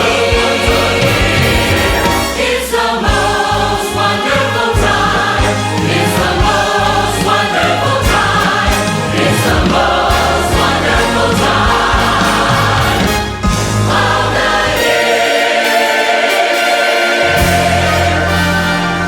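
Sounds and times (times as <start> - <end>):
choir singing with orchestra: 0.0 - 19.0.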